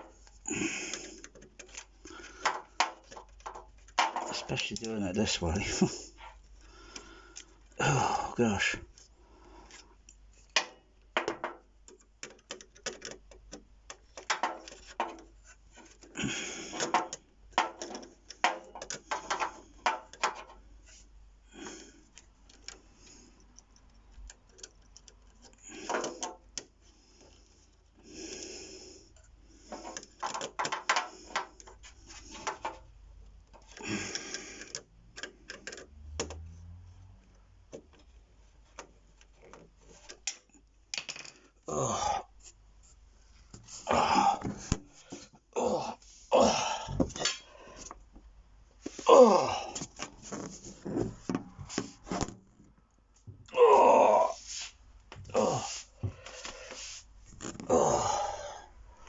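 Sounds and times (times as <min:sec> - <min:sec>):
connectors clicking and tapping: 0:00.0 - 0:07.8, 0:09.7 - 0:20.7, 0:22.0 - 0:28.0, 0:29.1 - 0:36.5, 0:37.2 - 0:41.6
cables rustling: 0:42.4 - 0:59.0.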